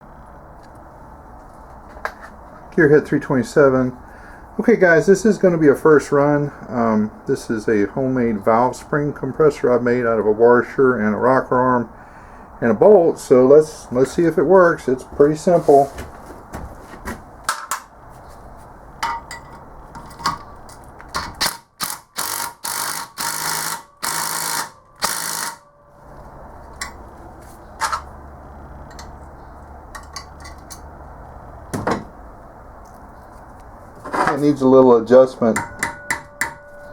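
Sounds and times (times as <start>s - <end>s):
metal clinks and taps: 19.0s - 21.3s, 28.8s - 29.2s, 29.9s - 30.9s, 35.5s - 36.9s
ratchet wrench rasping: 21.4s - 25.6s.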